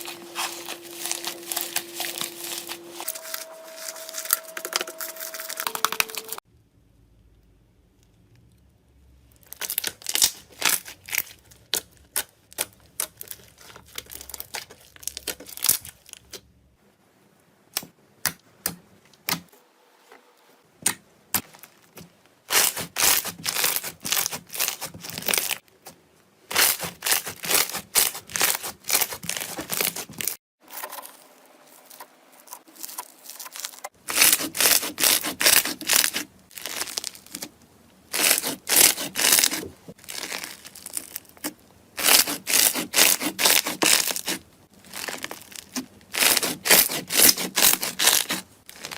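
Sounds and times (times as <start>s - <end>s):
slime squeezed crackling and popping: 35.5s - 37.5s, 38.1s - 48.9s.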